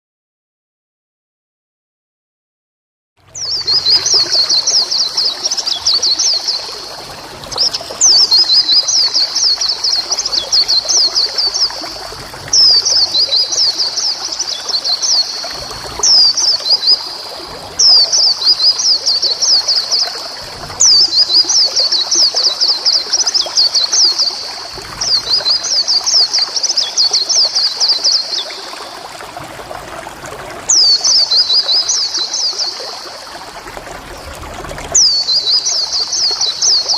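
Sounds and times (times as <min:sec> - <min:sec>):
bird chattering song: 0:03.4 - 0:28.7.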